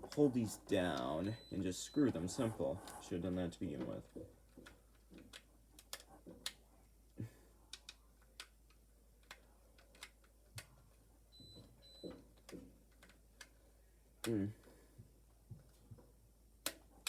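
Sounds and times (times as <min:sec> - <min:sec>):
small screwdriver clicking on wires: 0:07.7 - 0:10.7.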